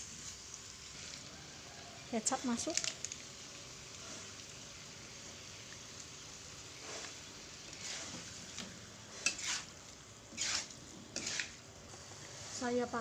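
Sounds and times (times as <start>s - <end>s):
food sizzling in a pan: 0.0s - 13.0s
utensil scraping a pan: 6.8s - 8.4s, 9.1s - 9.7s, 10.3s - 11.6s.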